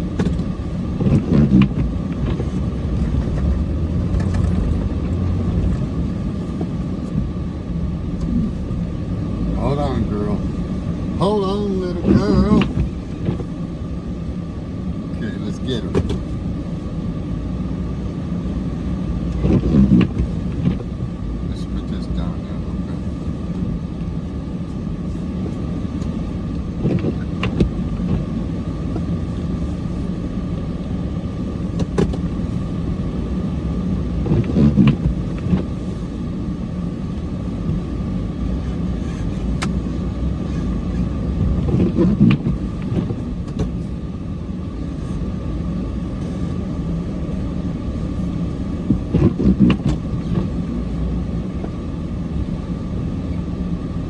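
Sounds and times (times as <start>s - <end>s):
steady whine: 0.0s - 54.0s
truck engine droning: 0.0s - 54.0s
knocks and clunks: 0.1s - 5.9s, 15.8s - 16.4s, 31.6s - 32.3s, 34.2s - 35.7s, 40.4s - 43.9s.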